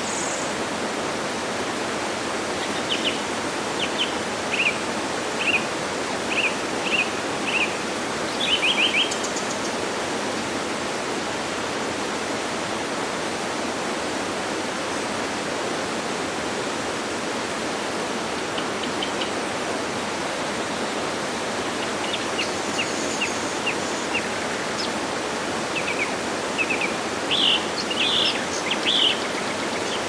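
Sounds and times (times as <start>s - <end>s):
waterfall rushing: 0.0s - 30.0s.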